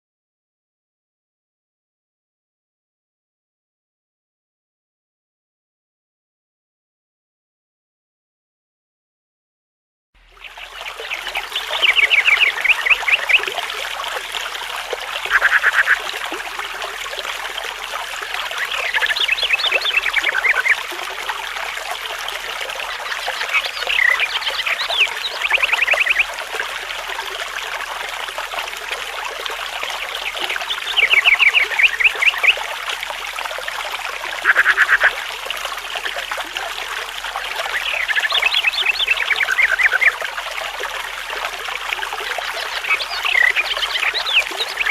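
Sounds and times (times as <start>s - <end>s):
water trickling: 10.2s - 44.9s
animal calls in pulsed trills: 15.2s - 16.1s, 34.4s - 35.2s.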